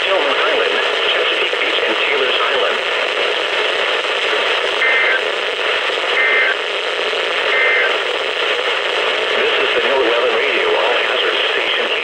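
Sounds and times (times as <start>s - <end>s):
radio static hiss: 0.0s - 12.0s
two-tone digital data bursts: 4.8s - 5.2s, 6.2s - 6.6s, 7.4s - 8.0s.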